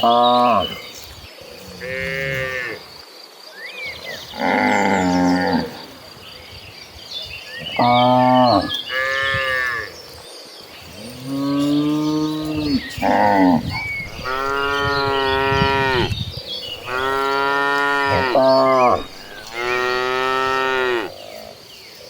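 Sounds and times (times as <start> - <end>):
cows mooing: 11.2 - 21.2.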